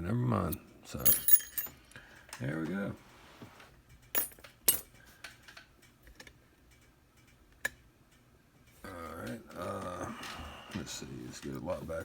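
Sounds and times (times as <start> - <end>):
metallic clicks and clinks: 0.6 - 1.8, 3.9 - 8.2.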